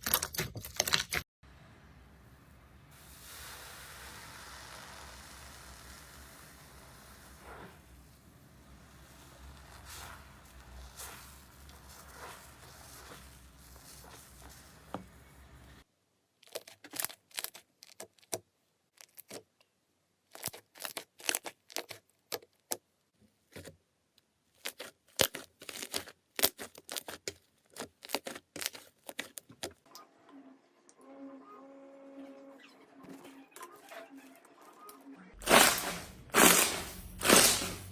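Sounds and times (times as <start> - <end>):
slime crackling and popping: 3.2 - 15.8, 16.4 - 18.4, 20.3 - 22.4, 24.6 - 29.5, 35.4 - 37.9.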